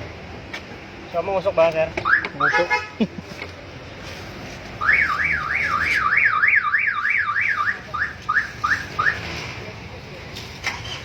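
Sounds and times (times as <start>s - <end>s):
car alarm chirps: 2.0s - 2.6s, 4.8s - 9.2s
car alarm siren warbling: 4.8s - 9.2s.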